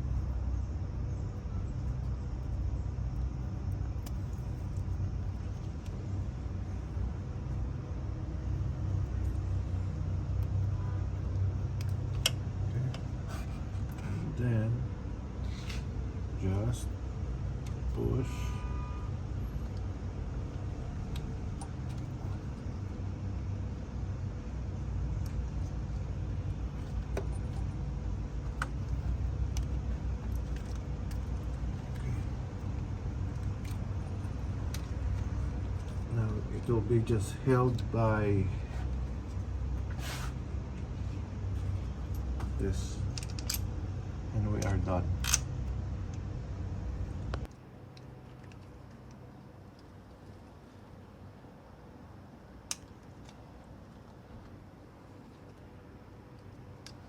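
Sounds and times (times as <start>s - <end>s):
low mechanical rumble: 0.0s - 57.0s
metal parts clicking and clinking: 42.1s - 43.7s, 44.6s - 45.5s
parts clicking: 52.6s - 54.6s.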